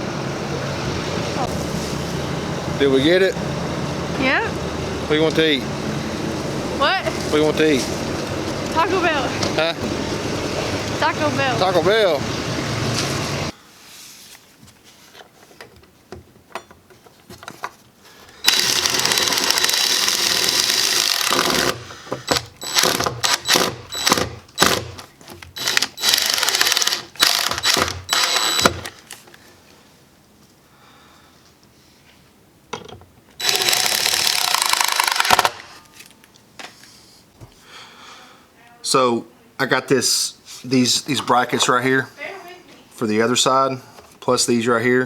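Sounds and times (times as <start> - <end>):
handheld power tool running: 3.1 - 13.5, 18.4 - 28.9, 33.4 - 35.6.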